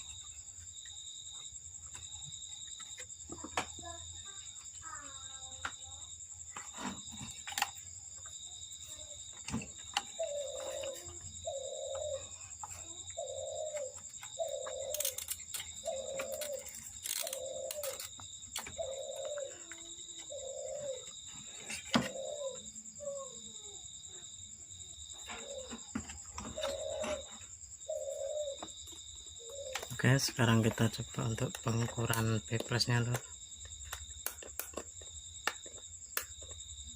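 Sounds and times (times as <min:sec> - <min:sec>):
bird cooing: 0:08.9 - 0:32.3.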